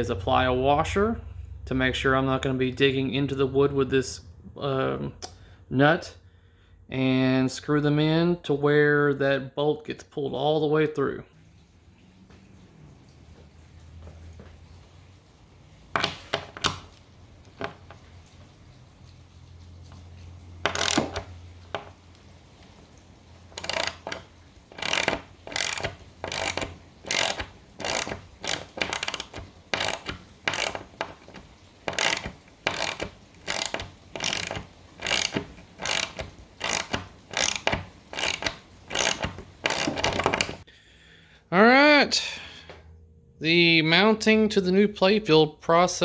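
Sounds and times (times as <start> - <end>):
hand ratchet clicking: 20.6 - 21.9, 23.5 - 40.6.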